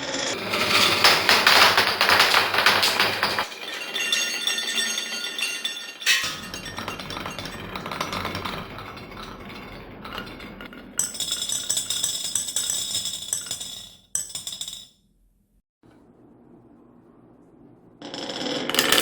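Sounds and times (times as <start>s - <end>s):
marbles rolling down wooden run: 0.3s - 14.5s, 18.0s - 19.0s
marbles clinking into glass bottle: 0.3s - 14.9s, 18.1s - 19.0s.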